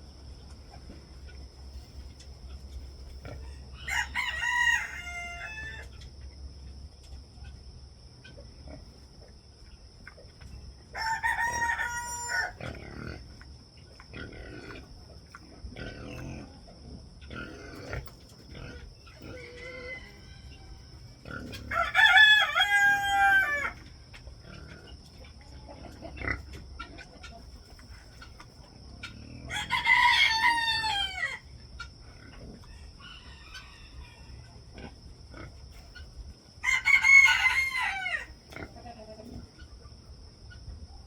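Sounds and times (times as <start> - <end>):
chickens clucking softly: 0.0 - 41.0
rooster crowing: 3.4 - 5.9, 10.9 - 12.6, 19.2 - 23.8, 29.5 - 31.5, 32.7 - 34.4, 36.6 - 38.4.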